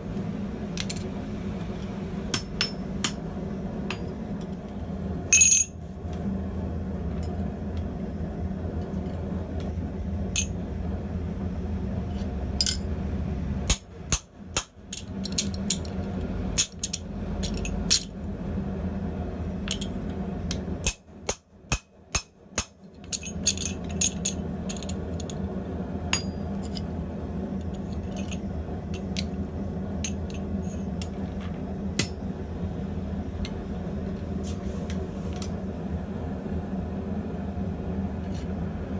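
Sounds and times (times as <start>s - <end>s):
steady low hum: 0.0s - 38.9s
hammer strikes on steel: 2.3s - 3.3s, 20.9s - 22.8s, 32.0s - 32.3s
metallic clinks and ringing taps: 5.4s - 5.8s, 26.1s - 26.9s.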